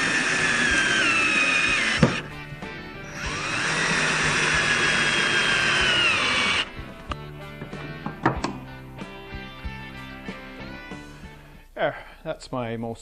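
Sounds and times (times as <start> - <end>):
power drill whining: 0.0 - 6.9.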